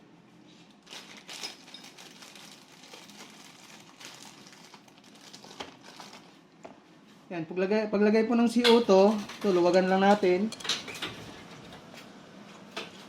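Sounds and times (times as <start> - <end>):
packaging rustling: 0.7 - 6.5.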